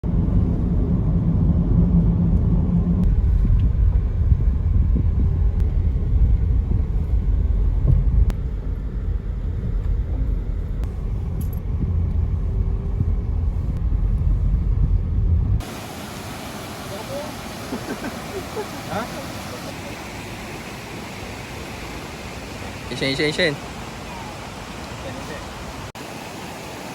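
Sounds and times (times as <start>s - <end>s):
vehicle driving rumble: 0.0s - 26.5s
faint engine hum: 0.0s - 26.9s.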